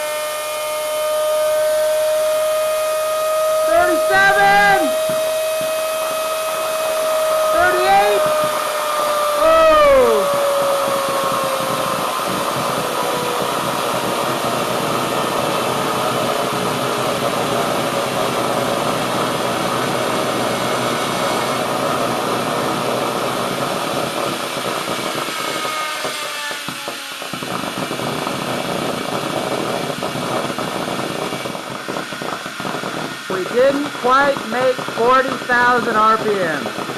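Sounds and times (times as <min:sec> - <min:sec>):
electric motor whining: 0:00.0 - 0:36.9.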